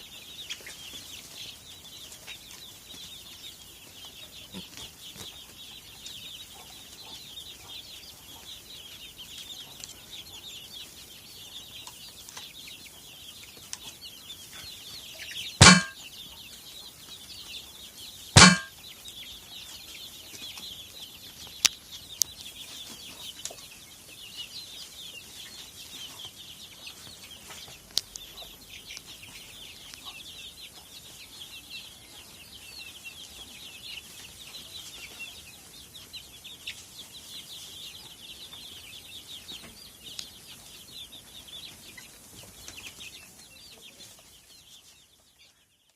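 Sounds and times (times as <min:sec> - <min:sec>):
chickens clucking: 0:00.0 - 0:45.8.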